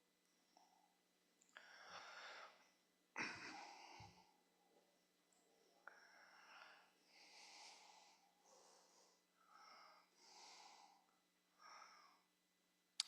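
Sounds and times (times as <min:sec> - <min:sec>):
faint breathy hisses: 0:01.6 - 0:02.7, 0:05.9 - 0:12.3.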